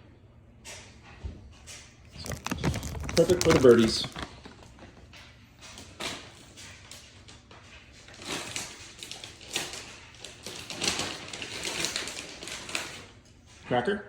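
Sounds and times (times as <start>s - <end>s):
food packaging rustling: 2.0s - 13.2s.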